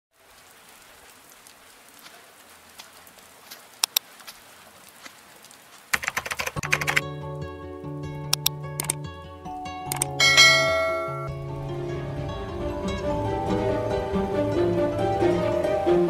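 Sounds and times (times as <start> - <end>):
clicks and taps: 3.8 - 4.0, 6.0 - 7.0, 8.4 - 9.0
rapid clicking: 5.9 - 7.0, 8.4 - 9.0
music with bell-like notes: 6.9 - 16.0.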